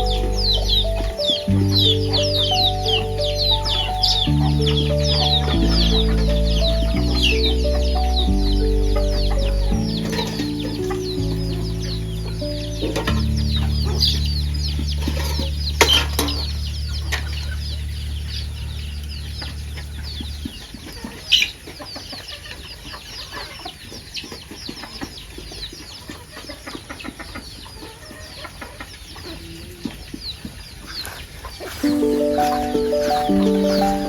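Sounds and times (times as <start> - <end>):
high falling bird chirps: 0.0 - 15.8
music with low chords: 0.0 - 20.4, 31.8 - 34.0.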